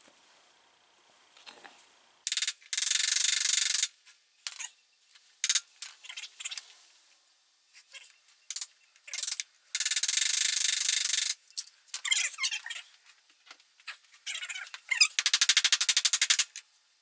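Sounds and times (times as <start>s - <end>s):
high hiss-like noise: 0.0s - 12.1s
hand tool metal clicks and squeaks: 5.4s - 6.7s, 13.9s - 16.6s.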